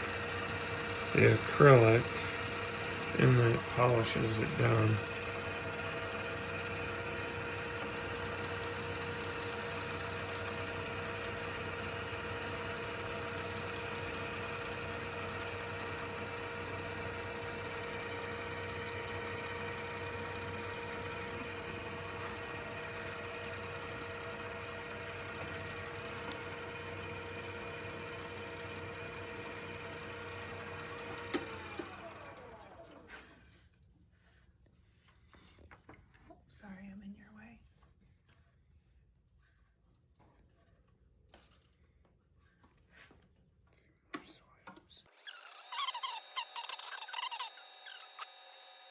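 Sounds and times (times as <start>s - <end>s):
sandpaper rubbing spinning acrylic: 0.0s - 29.9s, 45.2s - 48.4s
lathe motor humming: 0.0s - 33.2s.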